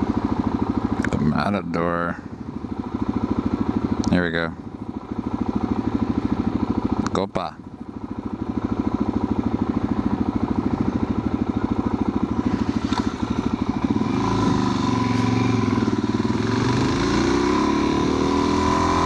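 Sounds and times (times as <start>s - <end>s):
motorcycle engine: 0.0s - 19.0s.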